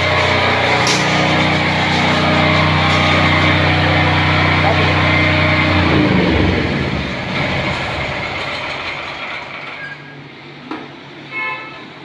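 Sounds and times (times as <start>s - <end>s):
generator engine humming: 0.0s - 9.7s
sharp click: 0.8s - 1.6s.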